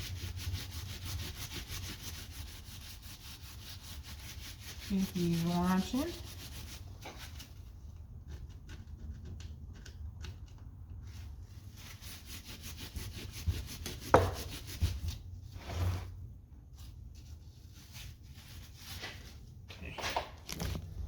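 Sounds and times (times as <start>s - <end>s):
hand scrubbing metal: 0.0s - 7.6s, 11.1s - 15.2s.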